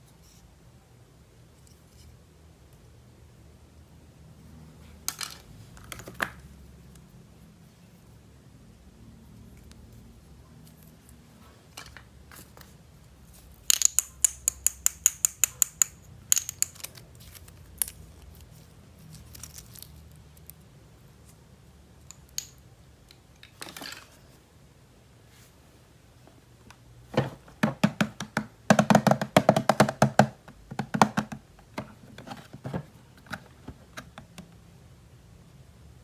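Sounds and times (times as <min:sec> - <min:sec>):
plastic pieces clicking: 0:13.6 - 0:18.4
taps on plastic: 0:27.1 - 0:32.0.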